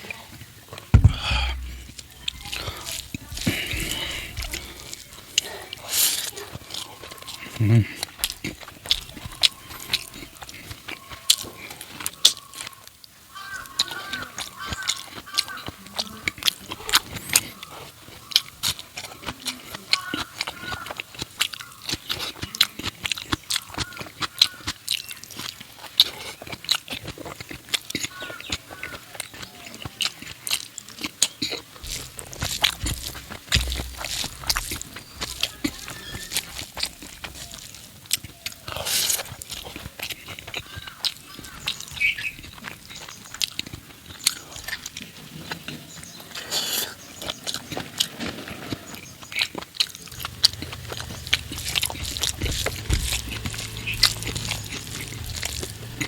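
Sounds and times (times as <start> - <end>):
close chewing with mouth smacks: 0.0 - 56.0
low rumble: 1.0 - 4.8, 50.1 - 56.0.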